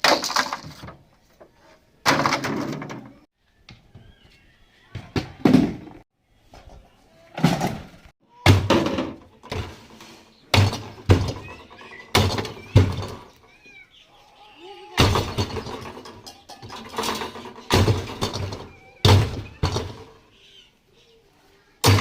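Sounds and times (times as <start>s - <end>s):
heavy blows smashing refrigerator: 17.0s - 20.0s.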